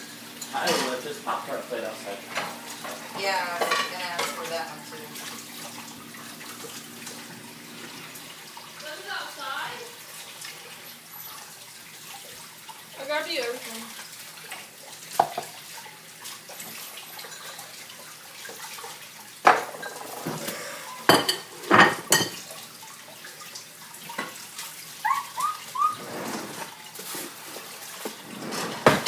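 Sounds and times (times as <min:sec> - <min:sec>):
plates and cutlery clattering: 0:00.4 - 0:01.0, 0:02.3 - 0:04.6, 0:19.4 - 0:20.5, 0:21.1 - 0:22.4, 0:28.2 - 0:29.0
tap running into a sink: 0:14.5 - 0:15.6, 0:19.4 - 0:22.5
short rising squeaks: 0:25.1 - 0:26.7.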